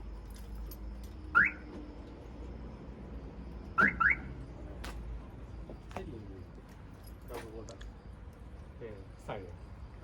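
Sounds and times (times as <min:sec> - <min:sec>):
car alarm chirps: 0:01.3 - 0:01.8, 0:03.6 - 0:04.5.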